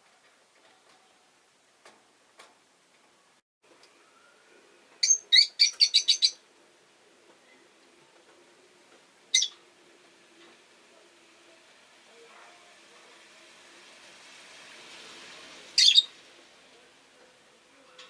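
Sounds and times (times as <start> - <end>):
lovebird chirping: 5.0 - 6.4, 9.3 - 9.6, 15.8 - 16.1.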